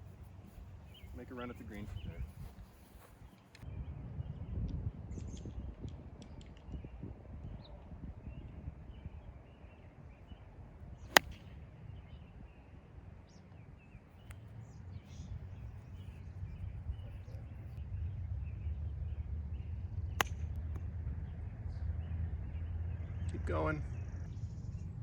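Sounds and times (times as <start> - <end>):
golf club striking ball: 11.1 - 11.5.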